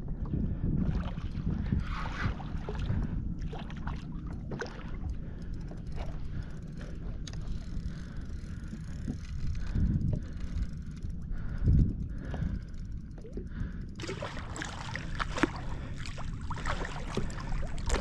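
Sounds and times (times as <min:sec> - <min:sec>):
wind buffeting microphone: 0:00.0 - 0:18.0
small water splashes: 0:14.0 - 0:18.0.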